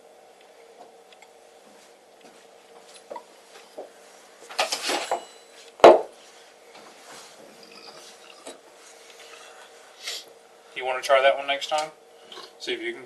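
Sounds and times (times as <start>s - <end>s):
bottle knocking on wood: 5.8s - 6.1s.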